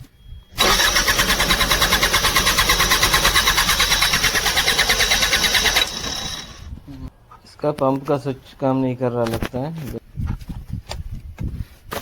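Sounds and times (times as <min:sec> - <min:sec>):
diesel engine cranking: 0:00.5 - 0:06.9.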